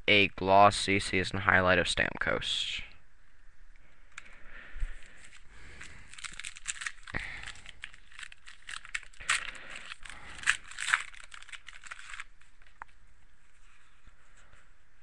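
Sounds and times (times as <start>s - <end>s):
plastic wrapper crinkling: 5.0s - 13.0s.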